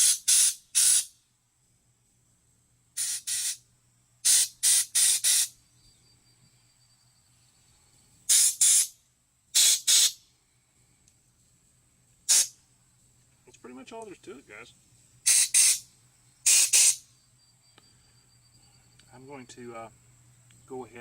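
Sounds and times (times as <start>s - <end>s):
hissing spray blasts: 0.0s - 1.1s, 3.0s - 3.6s, 4.2s - 5.6s, 8.3s - 10.2s, 12.3s - 12.6s, 15.2s - 15.8s, 16.4s - 17.0s.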